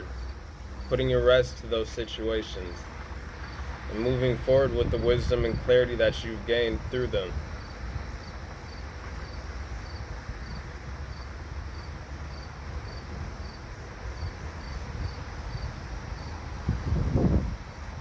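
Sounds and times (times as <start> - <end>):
insect chirping: 0.0 - 1.1, 7.4 - 18.0
steady low rumble: 0.0 - 18.0.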